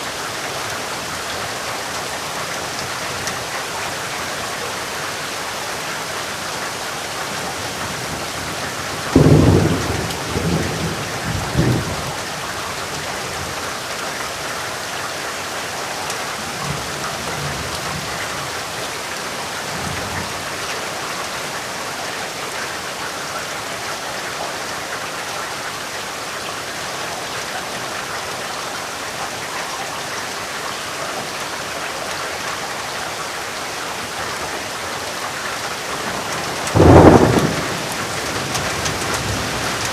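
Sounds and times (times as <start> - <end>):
steady rain: 0.0 - 39.9
rolling thunder: 8.6 - 12.2, 36.0 - 39.9
thunderclap: 36.0 - 39.9.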